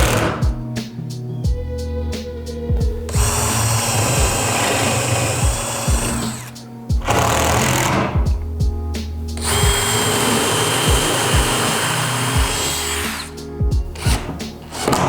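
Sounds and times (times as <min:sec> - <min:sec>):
background music with steady beat: 0:00.0 - 0:15.0
power tool whining: 0:03.1 - 0:08.2, 0:09.4 - 0:15.0.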